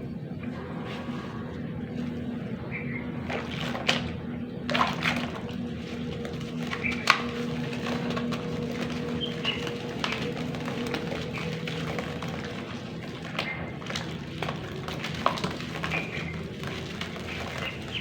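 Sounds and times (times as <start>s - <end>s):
low hum: 0.0s - 18.0s
sharp cracks and splashes: 0.4s - 18.0s
clay crumbling into water: 3.2s - 18.0s.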